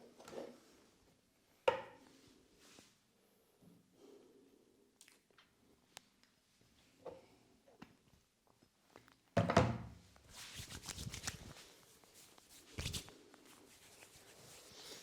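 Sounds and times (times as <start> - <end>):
rubbing and patting on skin and hair: 10.2 - 15.0.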